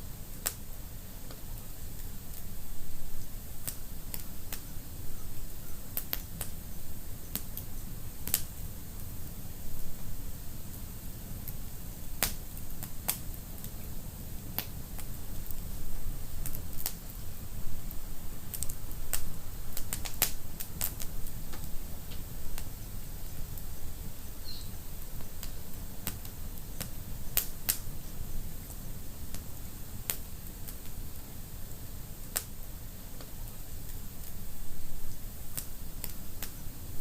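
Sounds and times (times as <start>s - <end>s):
low rumble of flames: 0.1s - 37.0s
wood fire crackling and popping: 0.2s - 37.0s
faint whistle: 24.4s - 24.8s.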